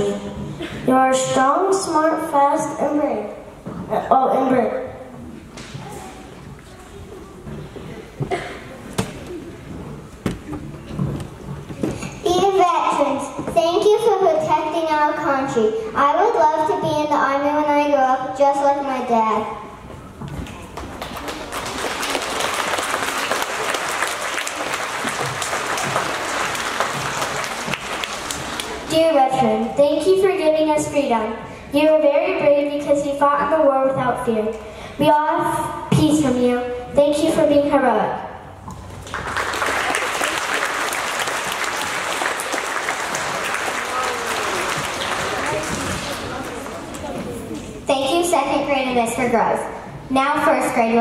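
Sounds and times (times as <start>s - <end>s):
audience applauding: 20.6s - 28.9s, 39.0s - 47.3s.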